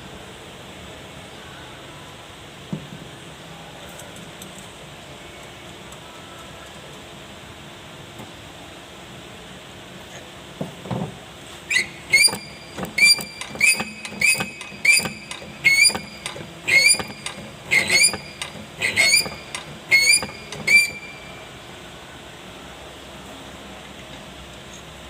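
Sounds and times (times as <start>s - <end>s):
injector spraying squeal: 11.7s - 21.5s.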